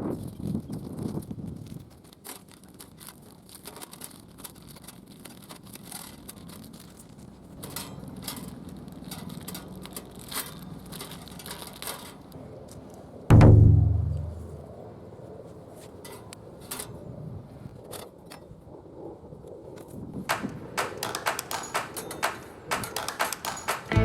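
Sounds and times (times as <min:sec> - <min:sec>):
low steady hum: 0:13.3 - 0:14.8.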